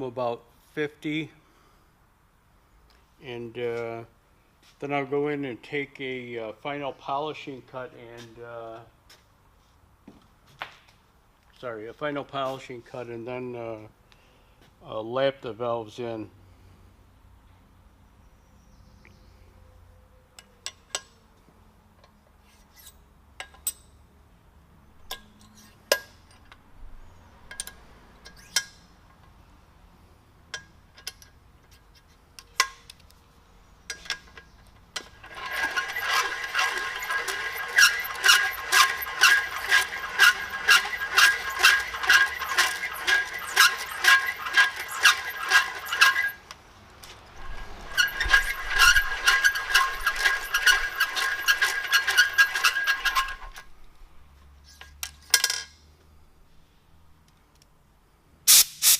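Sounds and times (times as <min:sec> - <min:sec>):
metal scraping and ringing clatter: 0:33.9 - 0:46.4, 0:47.2 - 0:53.7.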